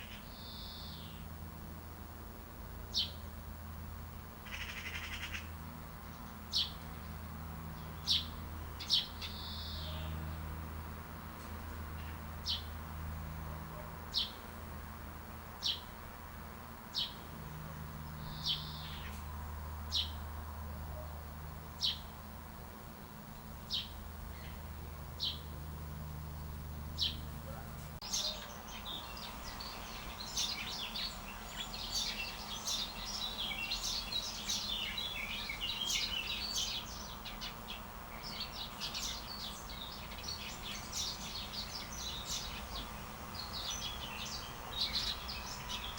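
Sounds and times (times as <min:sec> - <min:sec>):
bird chirping: 0:00.0 - 0:01.3, 0:02.9 - 0:03.2, 0:04.4 - 0:10.4, 0:15.6 - 0:15.9, 0:16.9 - 0:19.3, 0:19.9 - 0:20.2, 0:21.5 - 0:22.1, 0:23.1 - 0:45.9
chorus of birds twittering: 0:00.0 - 0:01.4, 0:02.8 - 0:14.6, 0:15.6 - 0:16.0, 0:16.7 - 0:45.9.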